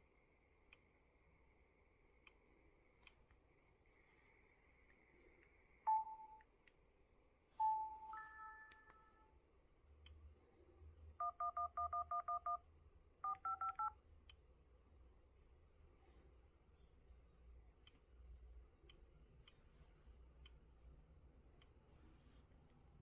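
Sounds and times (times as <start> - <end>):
dual-tone keypad beeps: 5.9 - 6.4, 7.6 - 9.2, 11.2 - 12.6, 13.2 - 14.0
phone chime: 7.6 - 9.3.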